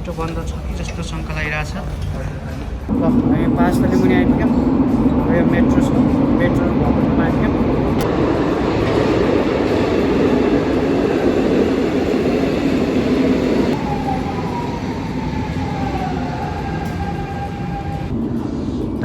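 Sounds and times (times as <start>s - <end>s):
train wheels and motors rumbling: 0.0s - 19.0s
train whine falling in pitch: 3.9s - 18.2s.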